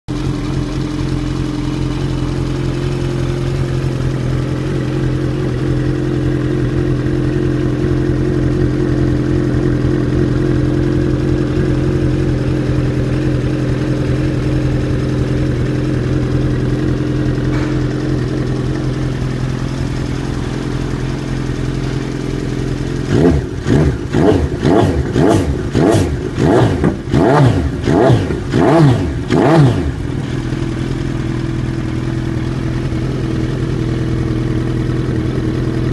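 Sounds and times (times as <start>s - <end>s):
motorcycle engine idling: 0.1s - 35.9s
engine revving: 20.1s - 30.6s.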